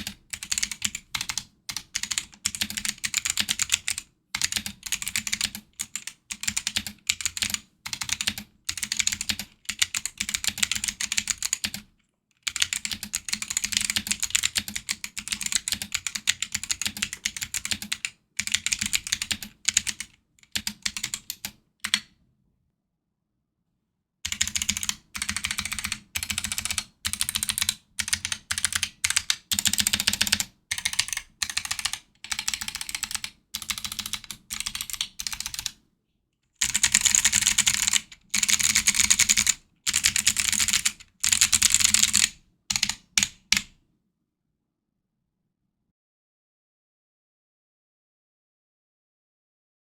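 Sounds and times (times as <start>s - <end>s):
clicky keyboard typing: 0.0s - 11.9s, 12.5s - 22.1s, 24.3s - 35.8s, 36.6s - 43.8s.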